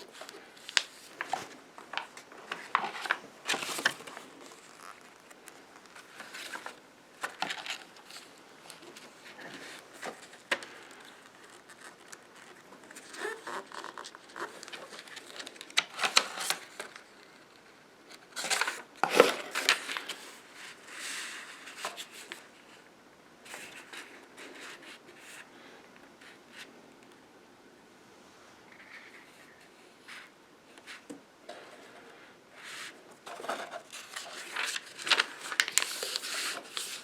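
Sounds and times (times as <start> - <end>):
paper rustling and crinkling: 0.0 - 22.7, 32.6 - 37.0.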